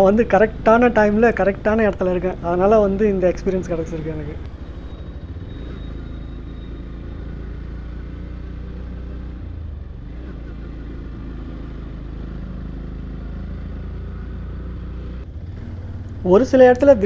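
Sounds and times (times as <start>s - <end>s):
motorcycle engine running: 0.0s - 4.9s, 7.4s - 17.0s
riding wind rush: 0.0s - 4.9s.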